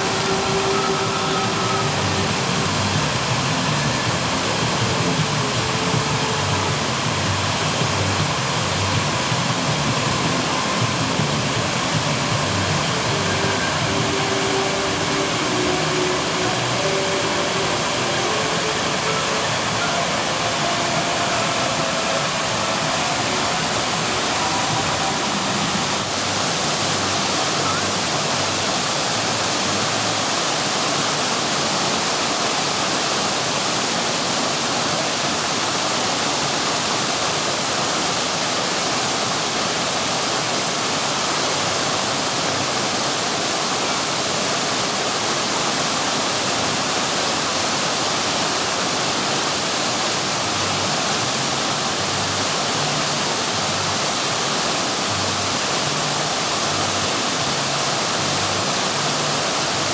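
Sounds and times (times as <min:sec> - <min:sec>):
splashing water rushing: 0:00.0 - 0:59.9.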